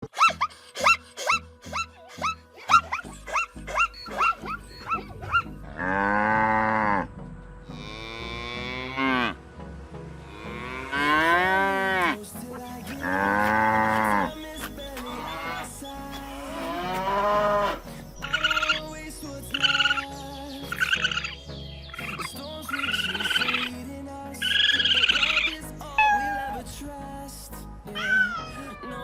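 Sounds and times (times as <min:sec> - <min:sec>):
cow mooing: 0:05.6 - 0:09.4, 0:10.3 - 0:12.2, 0:13.0 - 0:14.4, 0:15.1 - 0:15.7, 0:16.3 - 0:17.9.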